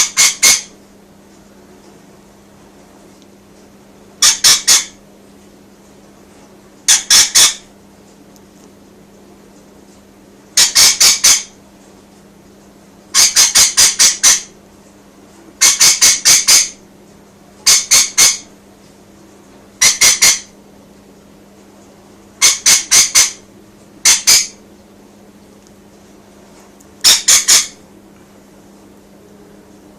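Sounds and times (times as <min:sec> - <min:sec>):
lorikeet screeching: 0:00.0 - 0:00.7, 0:04.2 - 0:05.0, 0:06.9 - 0:07.6, 0:10.6 - 0:11.5, 0:13.2 - 0:14.5, 0:15.6 - 0:16.8, 0:17.7 - 0:18.5, 0:19.8 - 0:20.5, 0:22.4 - 0:23.4, 0:24.0 - 0:24.6, 0:27.0 - 0:27.8.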